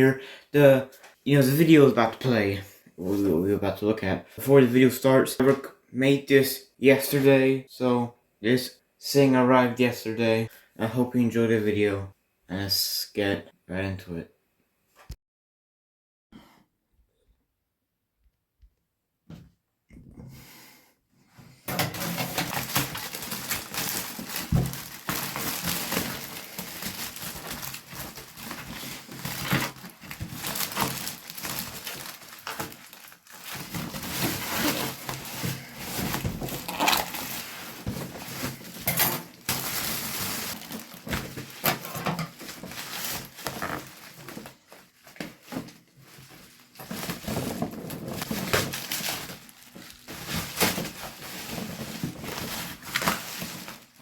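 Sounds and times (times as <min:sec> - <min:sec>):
packaging crinkling and rustling: 0:21.7 - 0:54.0.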